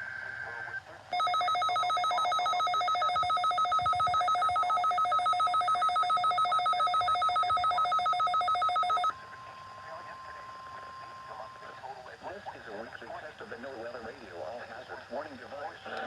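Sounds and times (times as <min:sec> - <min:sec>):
faint steady tone: 0:00.0 - 0:16.0
pulsing two-pitch alarm beep: 0:01.1 - 0:09.1.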